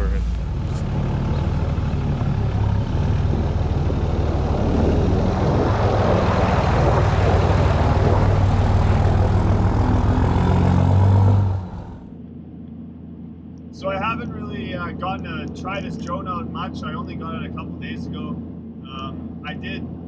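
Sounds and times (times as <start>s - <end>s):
diesel engine running: 0.0s - 12.2s.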